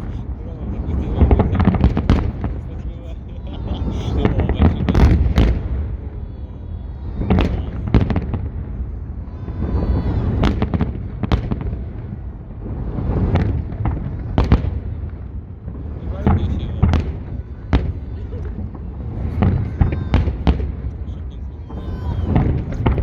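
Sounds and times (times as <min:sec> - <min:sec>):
low rumbling echo: 0:00.0 - 0:23.0.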